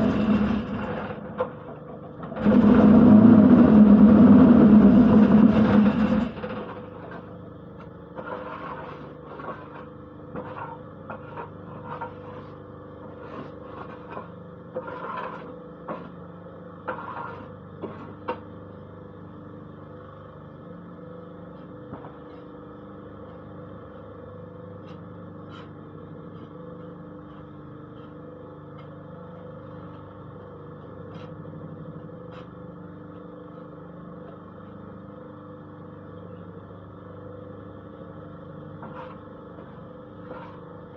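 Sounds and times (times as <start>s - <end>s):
machine motor hum: 0.0s - 10.8s.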